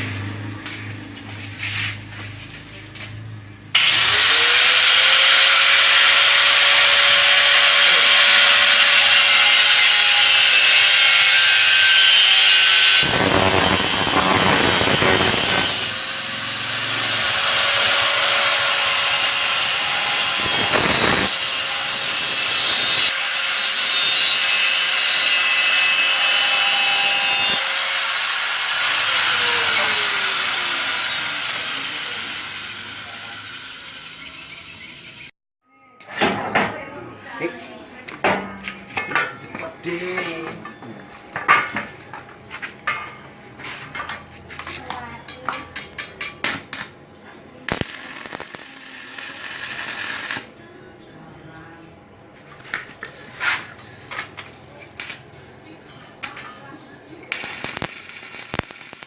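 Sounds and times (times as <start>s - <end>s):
angle grinder grinding metal: 3.8s - 35.3s, 47.7s - 50.5s, 57.3s - 59.0s.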